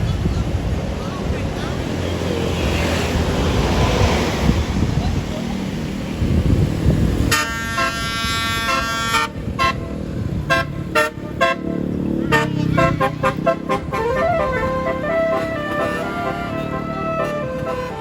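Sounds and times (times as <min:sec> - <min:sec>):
wind noise on microphone: 0:00.0 - 0:18.0
bus multi-tone air horn: 0:07.3 - 0:18.0.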